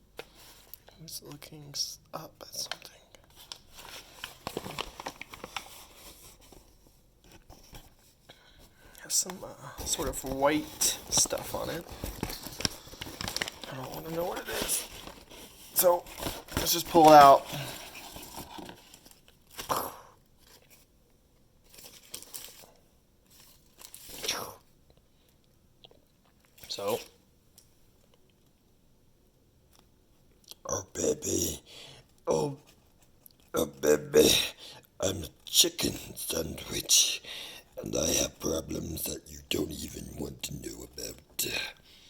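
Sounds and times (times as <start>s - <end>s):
food packaging crinkling: 2.8s - 6.6s, 9.8s - 19.6s, 21.7s - 22.8s, 23.4s - 24.2s.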